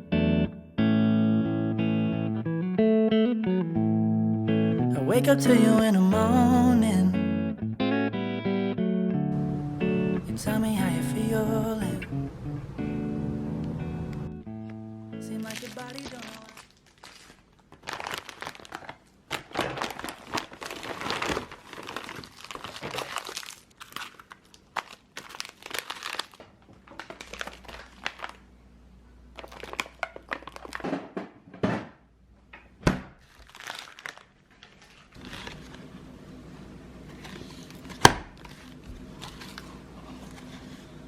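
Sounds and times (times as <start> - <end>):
crinkling handling noise: 14.6 - 28.5, 29.3 - 31.4, 33.2 - 36.2, 36.9 - 41.0.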